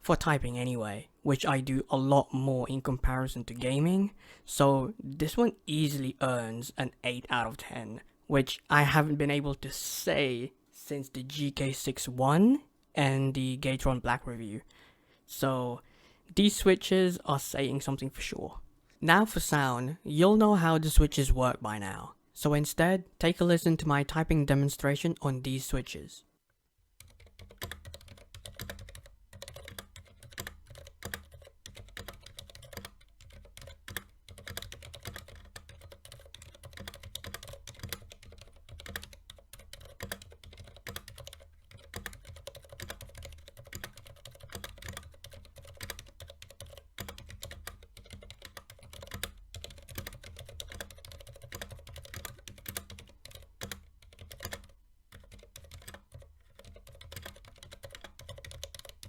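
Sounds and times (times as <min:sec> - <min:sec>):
typing on a mechanical keyboard: 0:27.0 - 0:59.0.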